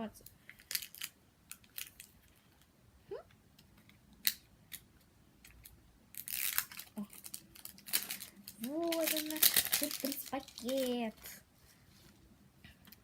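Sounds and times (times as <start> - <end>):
wrapper crinkling and tearing: 0.5 - 2.2, 6.1 - 11.4
plastic packaging clicks: 5.5 - 11.0.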